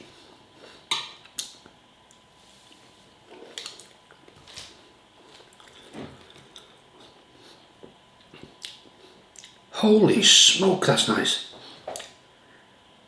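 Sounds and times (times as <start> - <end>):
person chewing food: 0.6 - 9.6.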